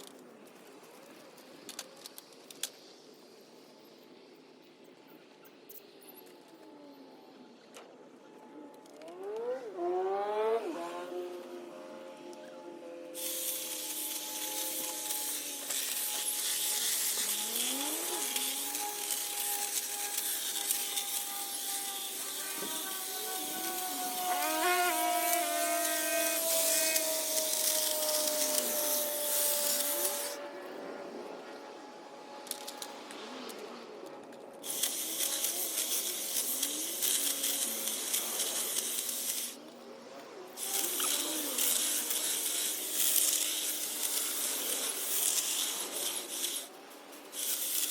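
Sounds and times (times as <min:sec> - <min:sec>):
electric hedge trimmer whining: 0:09.1 - 0:30.5, 0:40.6 - 0:47.9
hiss of trimmer blades: 0:13.2 - 0:30.4, 0:34.6 - 0:39.6, 0:40.6 - 0:47.9.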